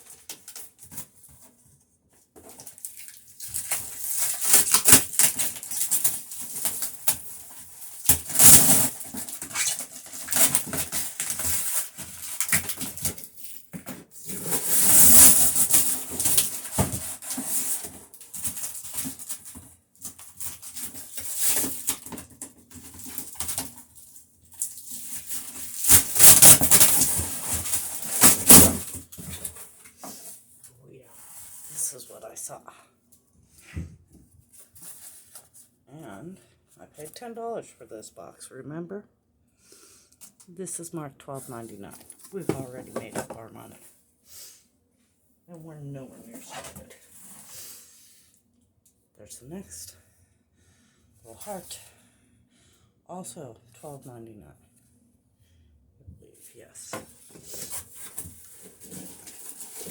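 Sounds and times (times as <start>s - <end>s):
packaging crinkling and rustling: 2.4s - 30.2s, 57.1s - 59.9s.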